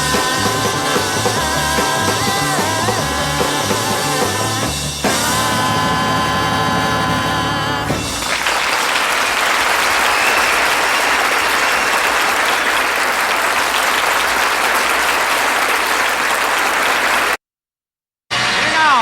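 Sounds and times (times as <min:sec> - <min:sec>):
audience applauding: 0:08.0 - 0:17.4.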